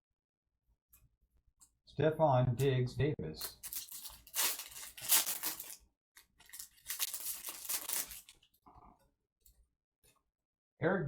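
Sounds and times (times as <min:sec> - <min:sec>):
card pack wrapper tearing: 0:03.4 - 0:08.4.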